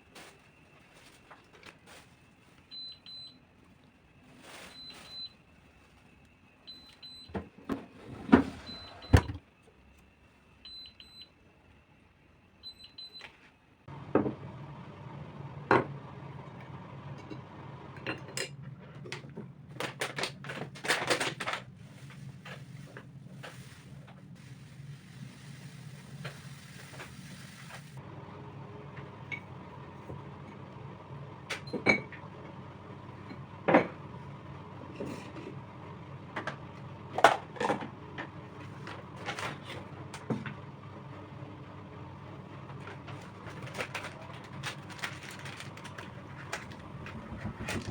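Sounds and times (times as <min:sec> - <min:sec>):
low appliance hum: 0:00.0 - 0:47.9
short high appliance beeps: 0:02.7 - 0:03.4, 0:04.7 - 0:05.4, 0:06.7 - 0:07.4, 0:08.5 - 0:09.4, 0:10.7 - 0:11.4, 0:12.6 - 0:13.3.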